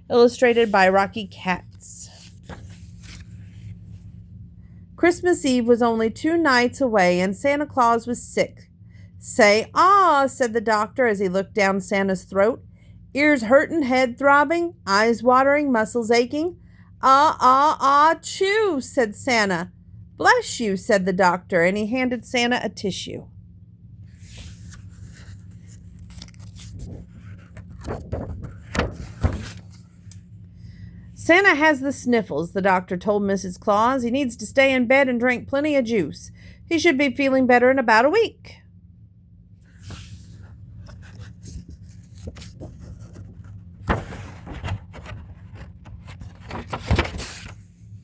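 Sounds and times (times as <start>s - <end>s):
steady low hum: 0.0s - 48.0s
book pages rustling: 0.3s - 4.2s, 24.0s - 30.3s, 39.6s - 48.0s.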